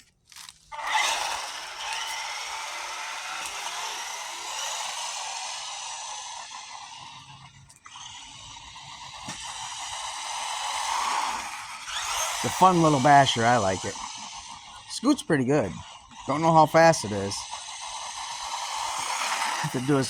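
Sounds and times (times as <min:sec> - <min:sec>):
small electric motor whining: 0:00.0 - 0:20.0.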